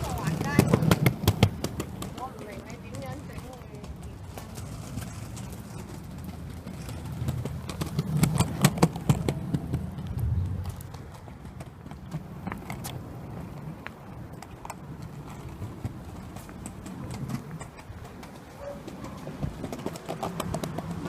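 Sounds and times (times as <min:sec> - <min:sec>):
skateboard wheel rumble: 0:00.0 - 0:21.0.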